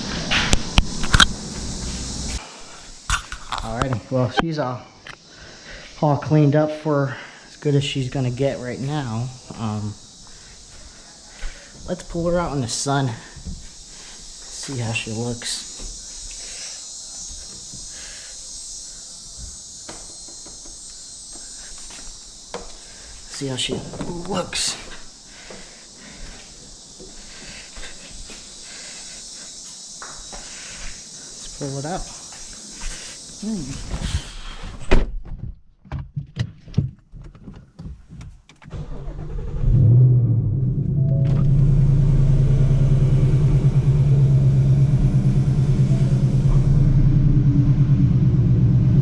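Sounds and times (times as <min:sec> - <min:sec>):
insects droning: 0:00.0 - 0:35.2, 0:38.7 - 0:49.0
car engine starting and idling: 0:38.7 - 0:49.0.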